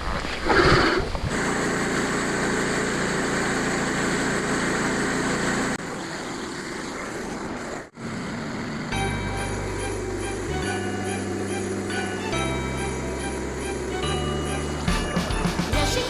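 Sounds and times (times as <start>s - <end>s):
small gasoline engine running: 1.3s - 16.0s.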